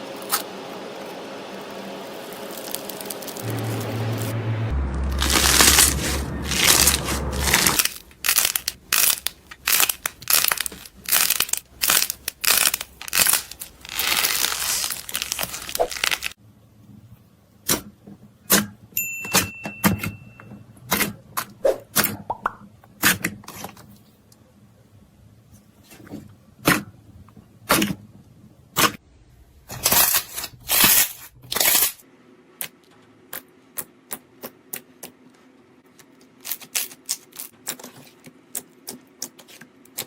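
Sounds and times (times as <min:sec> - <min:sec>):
slime crackling and popping: 0:02.3 - 0:03.4, 0:05.2 - 0:16.4.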